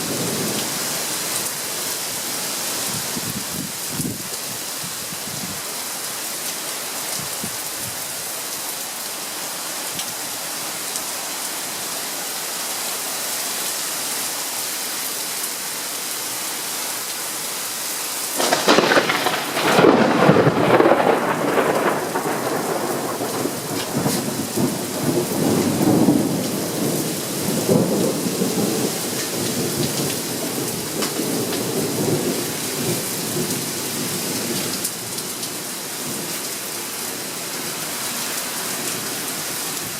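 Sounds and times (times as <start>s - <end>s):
steady rain: 0.0s - 39.9s
rumbling thunder: 18.4s - 33.5s.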